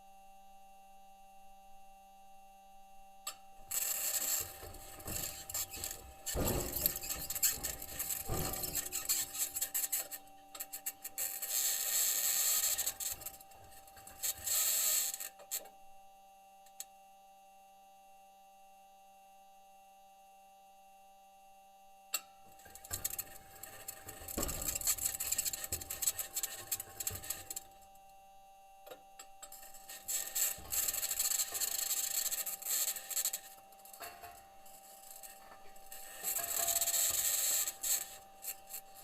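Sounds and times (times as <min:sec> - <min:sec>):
steady electrical hum: 0:00.0 - 0:39.0
metal wheels grinding over rock: 0:03.7 - 0:10.2, 0:10.8 - 0:15.2, 0:22.6 - 0:27.8, 0:29.5 - 0:39.0.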